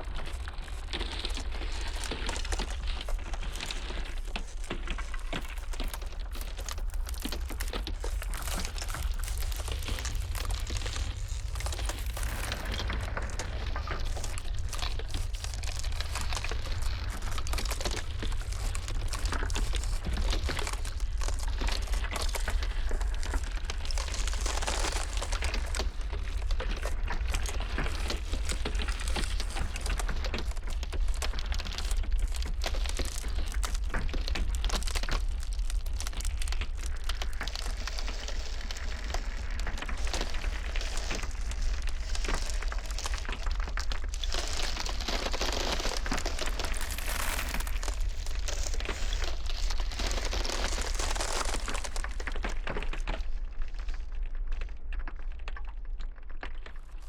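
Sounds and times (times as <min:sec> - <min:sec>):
low wind rumble: 0:00.0 - 0:33.8
ice crackling and cracking: 0:00.0 - 0:57.0.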